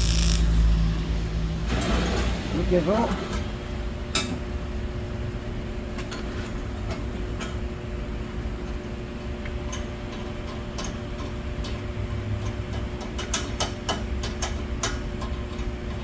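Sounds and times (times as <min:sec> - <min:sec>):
machine hum: 0:00.0 - 0:01.6.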